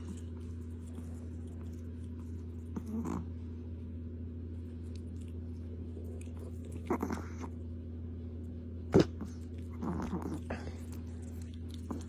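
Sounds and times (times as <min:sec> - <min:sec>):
dog mouth noises: 0:00.0 - 0:03.3, 0:04.9 - 0:07.6, 0:08.9 - 0:12.0
steady low hum: 0:00.0 - 0:12.0.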